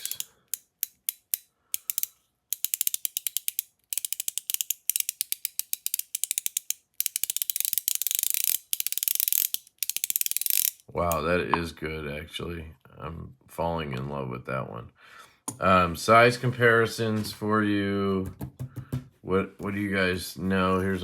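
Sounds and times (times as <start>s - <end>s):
fidget toy clicking: 0.0s - 11.2s.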